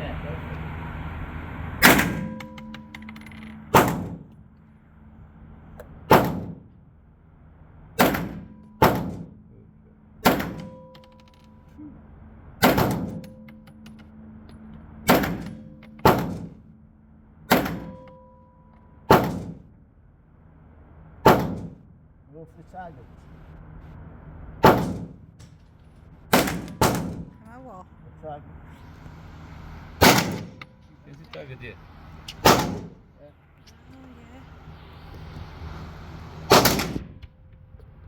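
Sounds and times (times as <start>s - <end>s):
gunshots with echo: 24.6s - 25.2s, 26.3s - 27.3s, 30.0s - 30.6s, 32.4s - 33.0s, 36.5s - 37.2s.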